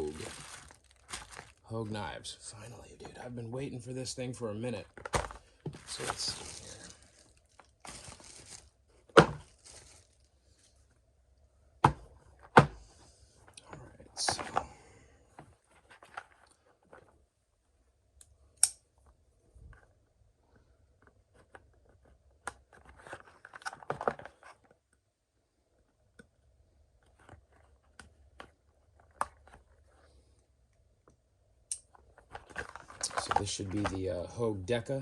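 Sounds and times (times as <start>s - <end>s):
bubble wrap rustling: 0.0s - 1.9s, 5.7s - 10.8s.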